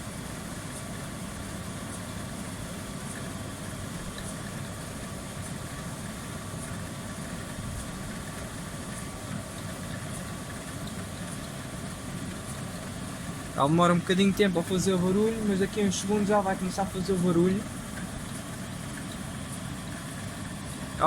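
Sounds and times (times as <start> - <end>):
faint steady whine: 0.0 - 21.0
tumble dryer running: 0.0 - 21.0.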